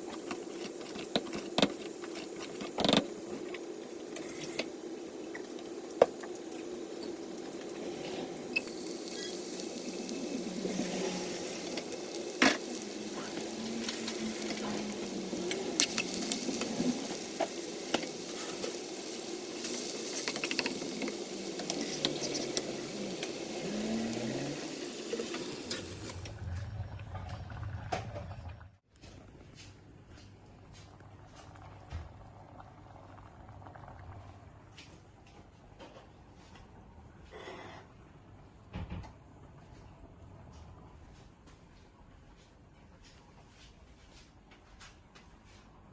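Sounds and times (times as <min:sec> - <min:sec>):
food sizzling in hot oil: 0:00.0 - 0:26.4
low hum: 0:26.0 - 0:28.8.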